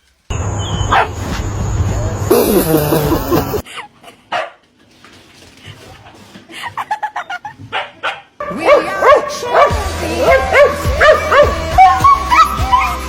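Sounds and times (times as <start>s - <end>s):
dog yipping and barking: 0.7s - 1.2s, 7.7s - 13.0s
music with steady bass: 8.5s - 13.0s.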